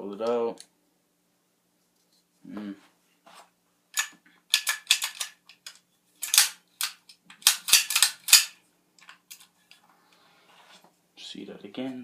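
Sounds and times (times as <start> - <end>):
pistol magazine clicking: 4.0 - 9.5.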